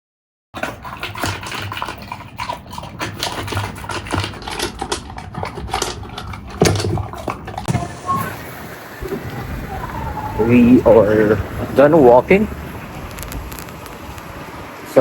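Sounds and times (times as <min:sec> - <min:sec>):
dog vocalizing: 0:00.6 - 0:08.4, 0:09.0 - 0:13.6
crackling scuffing noises: 0:13.0 - 0:14.4.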